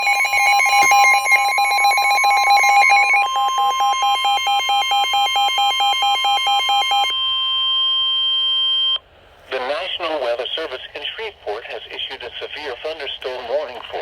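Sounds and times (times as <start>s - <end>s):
alternating electronic beeping: 0.0s - 9.0s.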